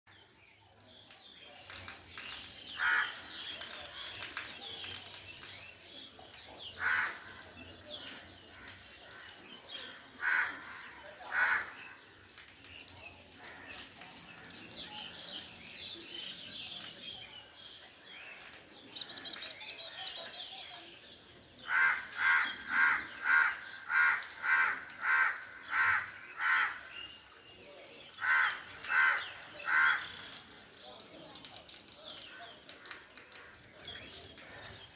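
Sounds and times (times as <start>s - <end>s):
tiny birds twittering: 0.1s - 34.9s.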